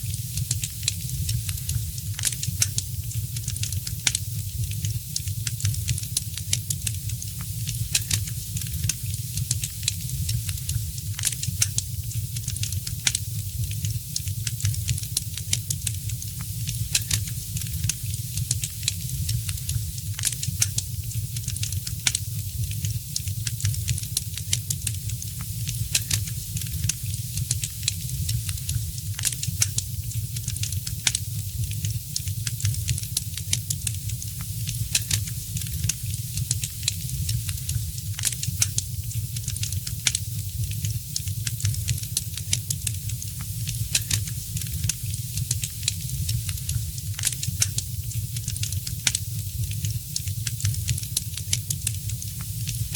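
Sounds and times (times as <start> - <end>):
low rumble of flame: 0.0 - 52.9
wood fire crackling: 0.0 - 52.9.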